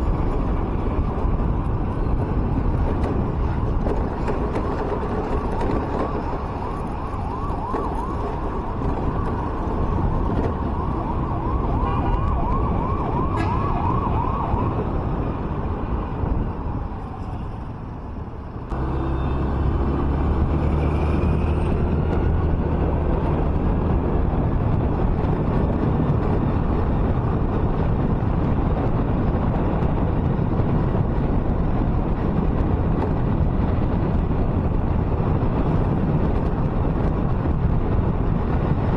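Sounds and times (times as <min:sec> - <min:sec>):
car engine and tyres rumbling: 0:00.0 - 0:38.9
traffic noise: 0:00.0 - 0:38.9
siren wailing: 0:04.6 - 0:17.7.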